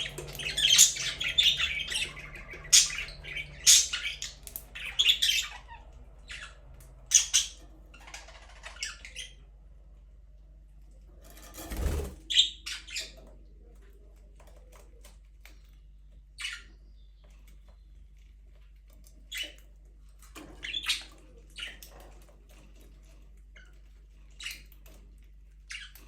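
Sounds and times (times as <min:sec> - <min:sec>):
budgerigars chirping and squawking: 0:00.0 - 0:09.5, 0:11.7 - 0:13.7, 0:16.2 - 0:17.7, 0:19.1 - 0:19.7, 0:20.3 - 0:22.2, 0:23.0 - 0:25.0, 0:25.7 - 0:26.0.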